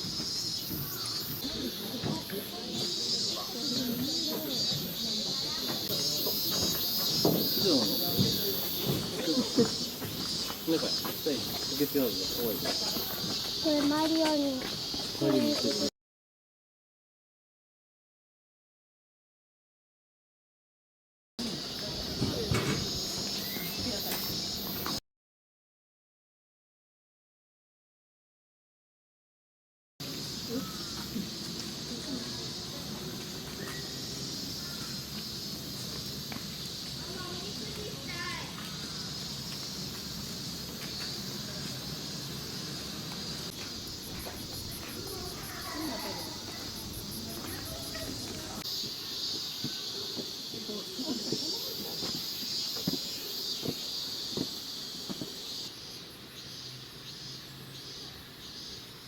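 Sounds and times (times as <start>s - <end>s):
cicadas buzzing: 0.0s - 15.9s, 21.4s - 25.0s, 30.0s - 59.0s
faint distant voices: 0.0s - 15.9s, 21.4s - 24.9s, 40.9s - 55.3s.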